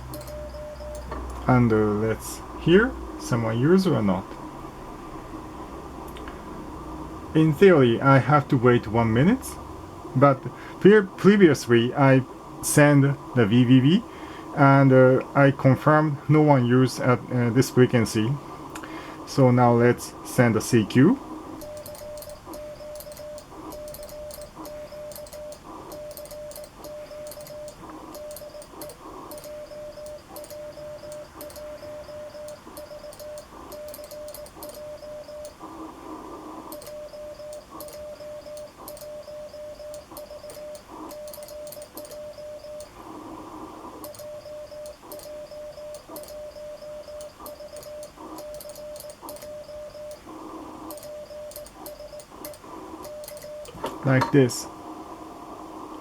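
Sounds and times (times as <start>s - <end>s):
morse code beeps: 0.0s - 1.1s, 21.6s - 28.7s, 29.3s - 35.6s, 36.7s - 42.9s, 44.1s - 50.2s, 50.9s - 52.3s
key clicks: 21.6s - 31.7s, 32.4s - 34.8s, 47.2s - 49.5s.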